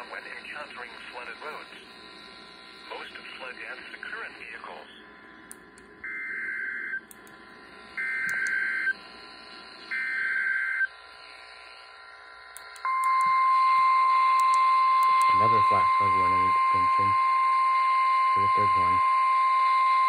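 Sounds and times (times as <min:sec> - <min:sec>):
warbling data tones: 0:09.8 - 0:20.0
loud steady alert tone: 0:12.7 - 0:17.2.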